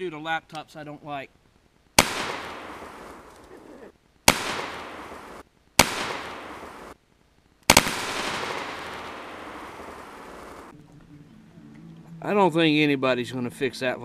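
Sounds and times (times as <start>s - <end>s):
shotgun blasts echoing: 2.0s - 3.5s, 4.3s - 7.0s, 7.7s - 10.7s.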